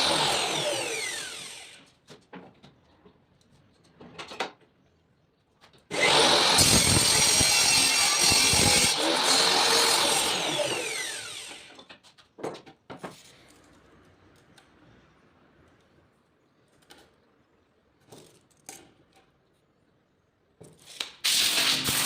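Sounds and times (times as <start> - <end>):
saw blade winding down: 0.0 - 1.9, 5.9 - 11.9, 21.2 - 22.0
table saw cutting wood: 0.0 - 1.9, 5.9 - 11.9, 21.3 - 22.0.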